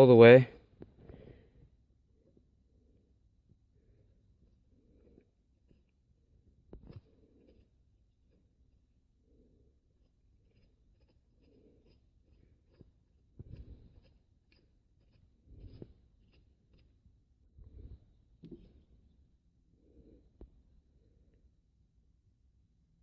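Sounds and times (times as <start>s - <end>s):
metal threads scratching: 4.4s - 6.0s, 6.7s - 8.5s, 10.0s - 18.7s.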